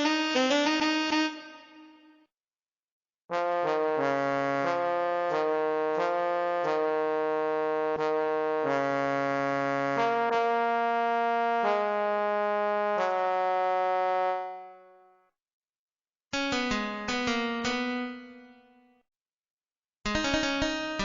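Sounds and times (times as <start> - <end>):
synthesized brass chords: 0.0 - 2.3, 3.3 - 15.2.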